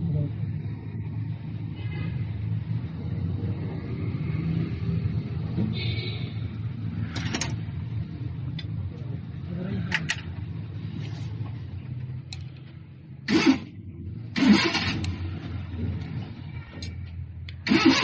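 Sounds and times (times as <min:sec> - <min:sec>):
diesel engine rumbling: 0:06.5 - 0:18.0.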